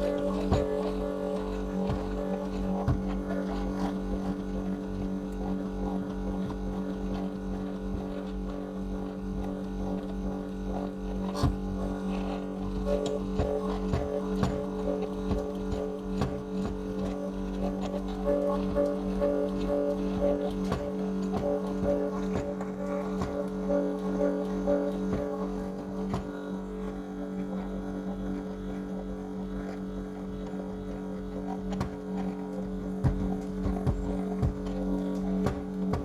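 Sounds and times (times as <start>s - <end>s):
low drone music: 0.0s - 36.0s
pulsing higher note: 12.8s - 26.9s.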